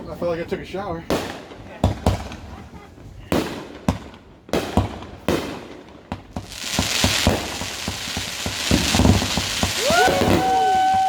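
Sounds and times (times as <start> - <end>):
firework bangs: 1.1 - 11.0
firework crackling: 4.6 - 11.0.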